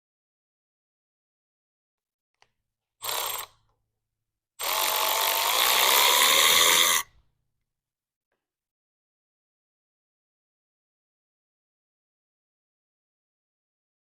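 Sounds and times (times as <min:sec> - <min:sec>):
small power tool motor whining: 0:03.0 - 0:03.6, 0:04.6 - 0:07.2.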